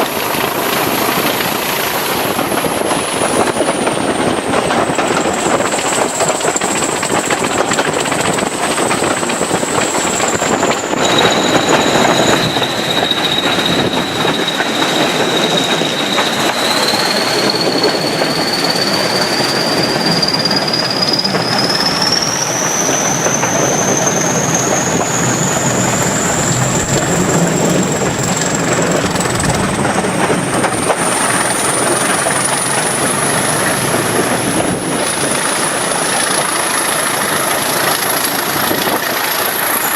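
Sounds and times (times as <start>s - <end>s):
diesel locomotive engine running: 0.0s - 39.9s
high thin whistling tones: 10.6s - 30.0s.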